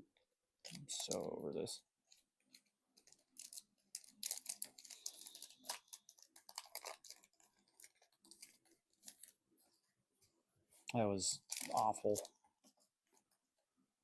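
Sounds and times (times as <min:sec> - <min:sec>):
foil wrapper crinkling and tearing: 0:02.1 - 0:09.4, 0:10.9 - 0:12.3.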